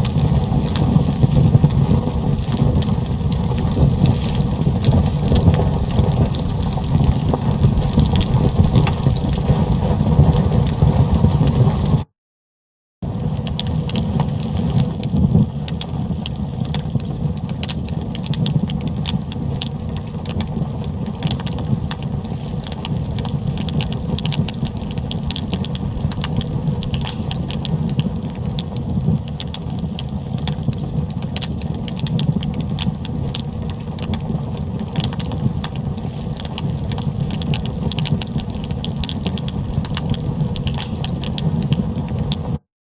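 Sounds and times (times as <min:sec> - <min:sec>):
fire crackling and popping: 0:00.0 - 0:12.1, 0:13.0 - 0:42.7
low fire rumble: 0:00.0 - 0:12.1, 0:13.0 - 0:42.6.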